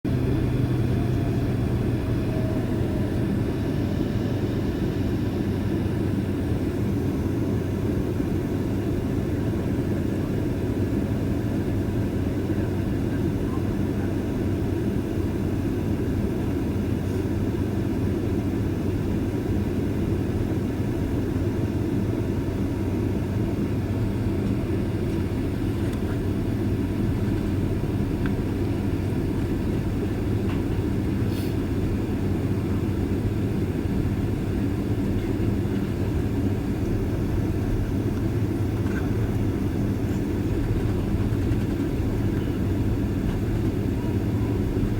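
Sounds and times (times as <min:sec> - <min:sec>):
jet engines humming: 0:00.1 - 0:44.9.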